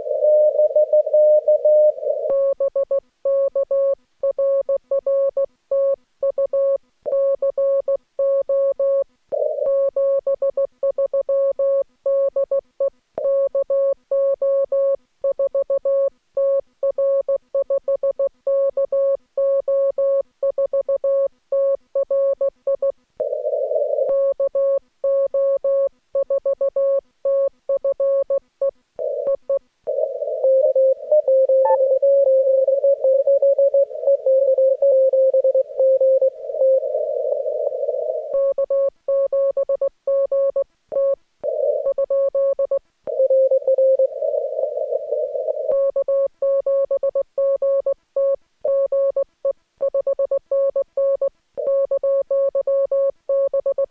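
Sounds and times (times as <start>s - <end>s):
morse code tone: 29.0s - 46.3s
radio band noise hiss: 36.3s - 38.3s.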